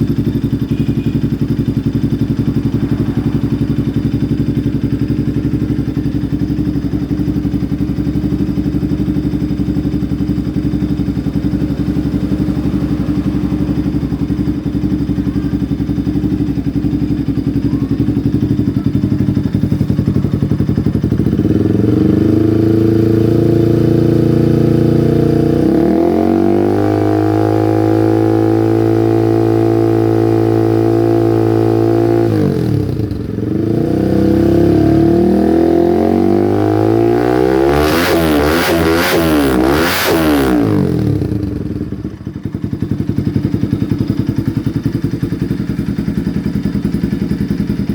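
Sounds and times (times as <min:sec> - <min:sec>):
motorcycle engine idling and revving: 0:00.0 - 0:47.9.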